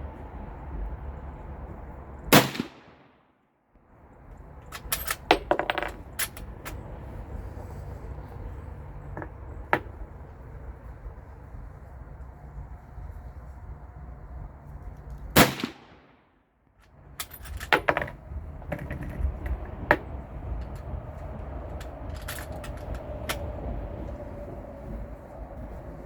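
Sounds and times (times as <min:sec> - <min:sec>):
rifle shot: 0:02.3 - 0:03.2, 0:15.4 - 0:16.2.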